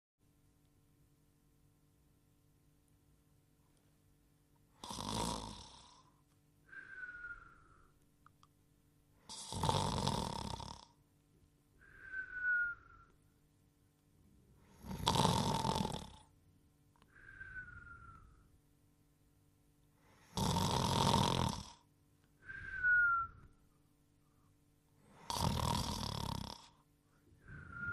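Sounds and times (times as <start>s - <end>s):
cartoon snoring: 4.8s - 6.1s, 9.3s - 11.0s, 14.7s - 16.3s, 20.2s - 21.9s, 25.1s - 26.8s
descending whistle: 6.8s - 8.0s, 11.8s - 13.2s, 17.1s - 18.6s, 22.4s - 23.8s, 27.4s - 27.9s.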